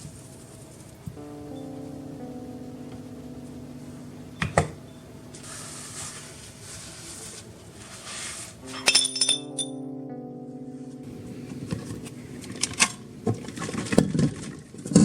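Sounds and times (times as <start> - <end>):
soft background music: 0.0 - 15.0
ringing clinks: 8.7 - 9.8.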